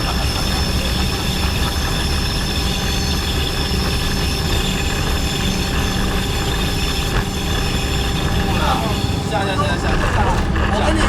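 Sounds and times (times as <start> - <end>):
diesel locomotive engine running: 0.0 - 11.0.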